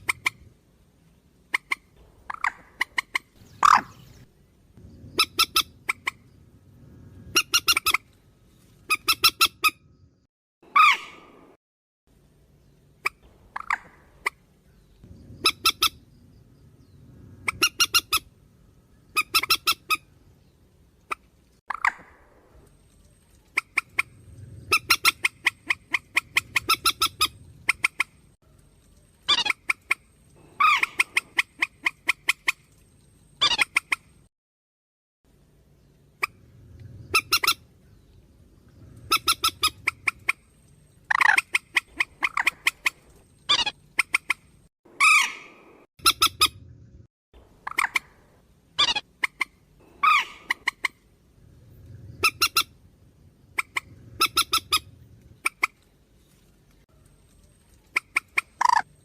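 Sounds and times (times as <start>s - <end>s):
bird harsh clucking calls: 0.0s - 0.5s, 1.5s - 4.0s, 5.1s - 6.3s, 7.3s - 8.1s, 8.9s - 9.8s, 15.4s - 16.1s, 17.4s - 18.3s, 19.1s - 20.0s, 23.5s - 28.2s, 29.3s - 32.6s, 37.1s - 37.6s, 39.0s - 40.5s, 41.1s - 46.6s, 47.6s - 48.2s, 48.8s - 51.1s, 52.2s - 52.8s, 53.5s - 55.8s, 57.9s - 58.9s
bird swooping squeals: 50.0s - 50.8s.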